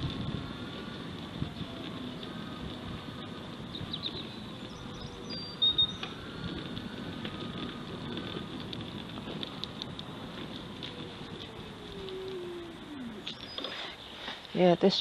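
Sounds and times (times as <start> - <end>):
distant traffic rumble: 0.0 - 15.0
wind: 0.0 - 15.0
birds chirping: 3.2 - 7.8, 12.7 - 14.2.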